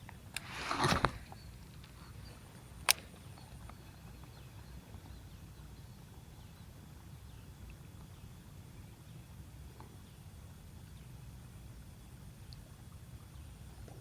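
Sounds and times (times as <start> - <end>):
sharp click: 0.3 - 2.0.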